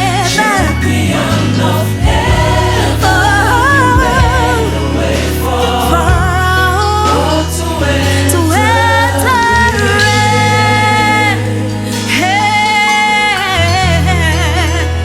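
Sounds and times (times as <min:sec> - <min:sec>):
bass and drums: 0:00.0 - 0:15.0
singers holding long notes: 0:00.0 - 0:15.0.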